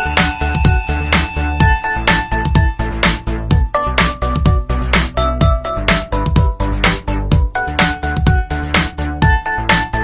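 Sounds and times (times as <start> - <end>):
electronic dance ringtone: 0.0 - 4.7.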